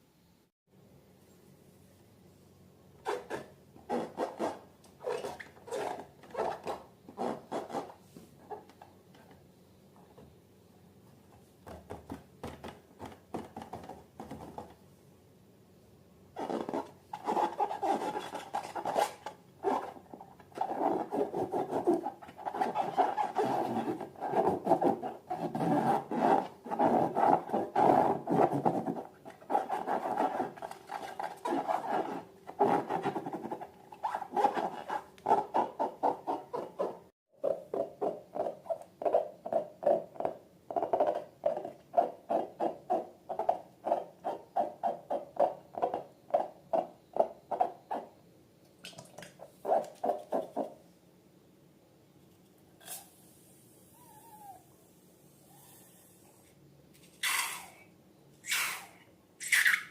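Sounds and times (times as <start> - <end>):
rubber balloons squeaking: 3.0 - 8.8, 16.4 - 48.1, 57.2 - 57.7, 58.4 - 59.9.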